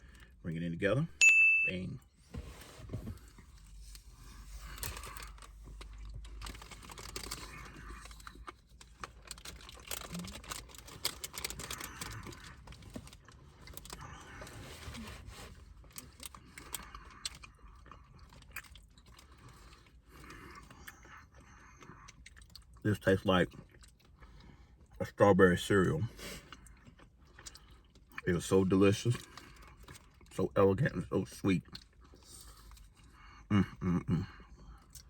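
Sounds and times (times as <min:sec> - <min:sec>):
person chewing crunchy apple: 0:03.2 - 0:22.8, 0:23.5 - 0:25.0, 0:26.2 - 0:28.2.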